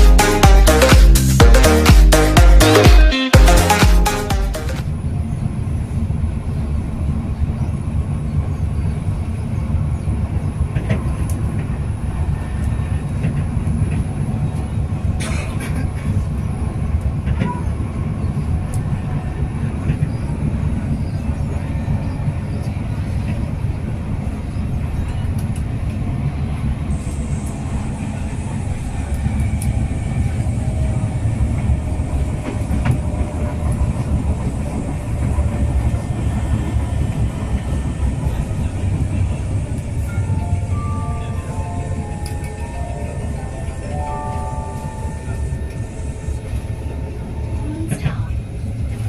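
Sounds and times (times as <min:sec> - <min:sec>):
train rumbling on rails: 0:04.6 - 0:49.0.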